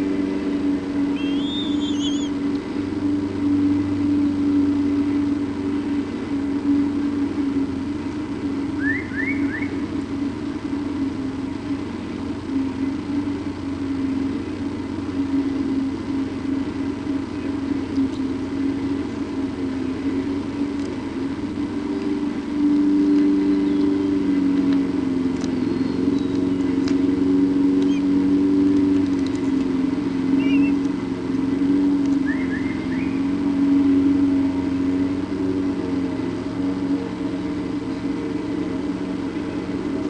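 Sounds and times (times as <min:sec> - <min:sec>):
low mechanical hum: 0:00.0 - 0:40.0
high chirps: 0:01.1 - 0:02.4, 0:30.3 - 0:30.8.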